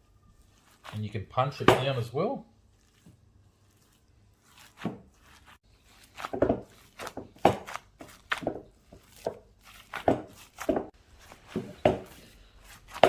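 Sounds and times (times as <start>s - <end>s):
hands punching meat in a bowl: 4.4s - 13.0s.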